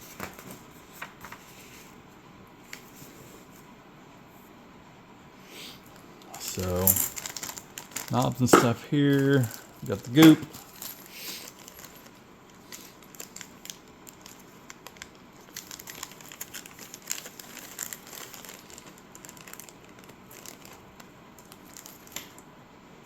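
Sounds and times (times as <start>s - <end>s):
packaging crinkling: 5.9s - 22.5s
small clicks and crackles: 5.9s - 22.5s.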